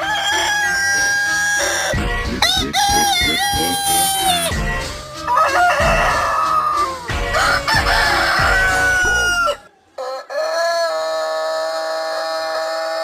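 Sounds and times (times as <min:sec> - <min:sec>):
rooster crowing and clucking: 0:00.0 - 0:13.0
deep bass thumps: 0:02.0 - 0:03.8, 0:04.4 - 0:05.0, 0:05.8 - 0:06.2.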